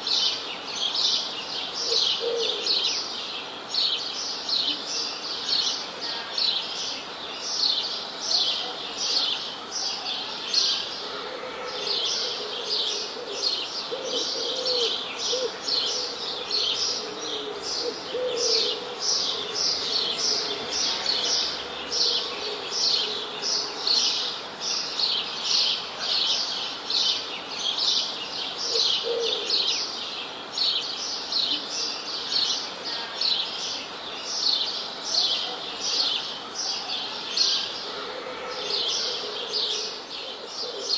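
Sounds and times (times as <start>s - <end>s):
soft steady hiss: 0.0s - 40.9s
songbirds chirping: 0.0s - 40.9s.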